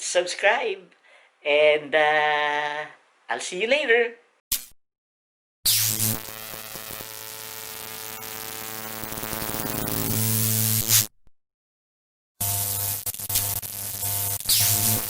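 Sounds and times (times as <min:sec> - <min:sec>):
electronic buzzing hum: 0:05.7 - 0:11.1, 0:12.4 - 0:15.0
static hiss: 0:05.8 - 0:11.0.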